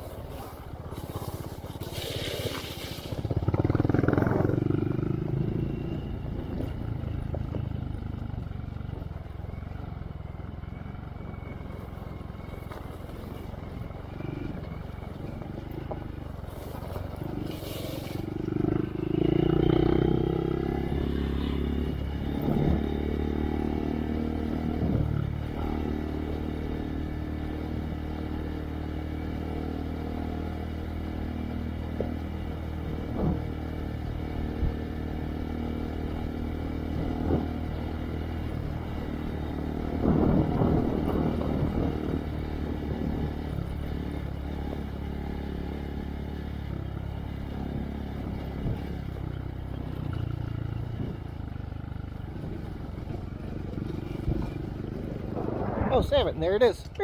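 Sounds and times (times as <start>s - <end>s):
motorbike engine running: 0.0s - 57.0s
knocks and clatter over bumps: 31.7s - 34.8s, 35.7s - 45.3s, 46.2s - 56.1s.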